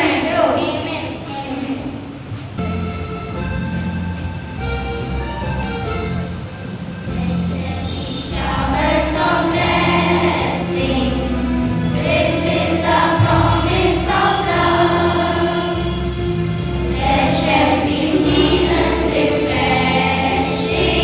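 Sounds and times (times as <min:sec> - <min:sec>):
choir singing: 0:00.0 - 0:01.9, 0:07.3 - 0:21.0
instrumental accompaniment: 0:02.3 - 0:21.0.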